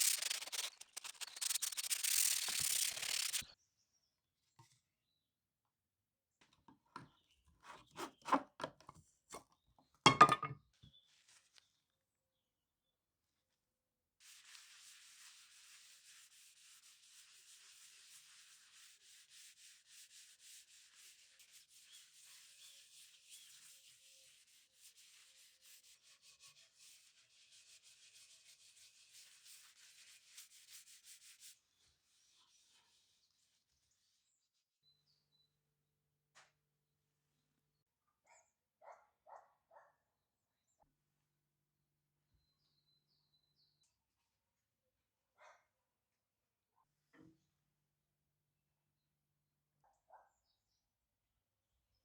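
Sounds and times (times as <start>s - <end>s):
faint quick rubbing strokes: 0.0s - 3.5s, 14.2s - 34.5s.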